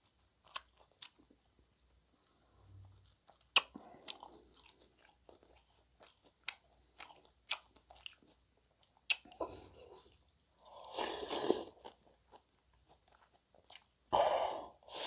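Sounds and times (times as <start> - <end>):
person chewing with crisp crunches: 0.0 - 14.1
wet mouth clicks: 3.4 - 3.8.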